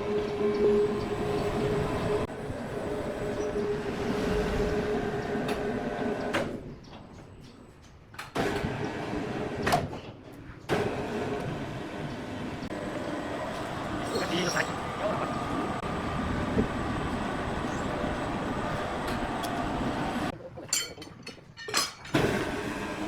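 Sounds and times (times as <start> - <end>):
sawmill machinery hum and rumble: 10.7 - 20.3, 22.2 - 23.0.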